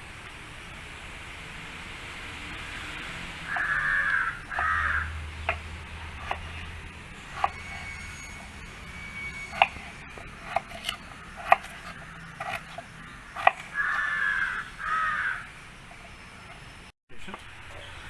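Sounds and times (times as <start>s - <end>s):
crow cawing: 3.5s - 5.2s, 12.9s - 15.5s
knife cutting on a board: 6.2s - 6.7s, 7.3s - 14.0s.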